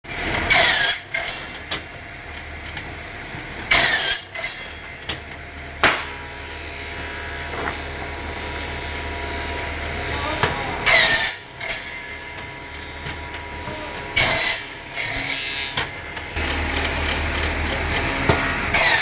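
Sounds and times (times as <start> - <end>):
woodworking machinery humming: 0.1 - 19.0
sharp knocks: 5.8 - 6.2.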